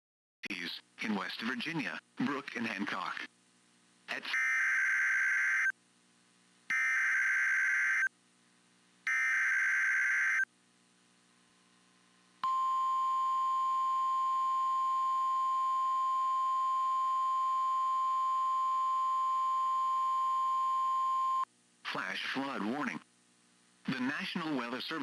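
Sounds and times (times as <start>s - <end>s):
steady warning alarm tone: 6.7s - 8.1s, 9.1s - 10.4s.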